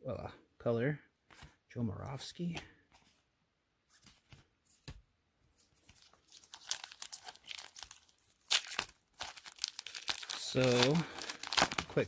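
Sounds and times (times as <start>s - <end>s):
wrapper crinkling and tearing: 5.8s - 12.0s
sharp rip of wrapper: 6.3s - 12.0s.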